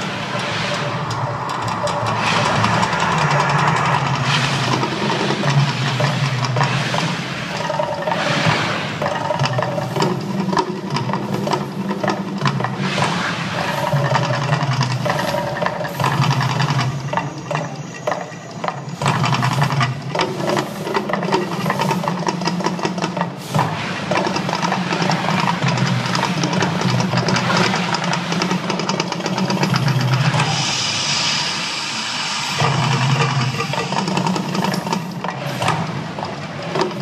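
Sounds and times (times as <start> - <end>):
sharp hits: 0.0 - 6.0
loud dense rumble: 0.0 - 7.6
hissing rush: 0.0 - 9.4, 30.2 - 37.0.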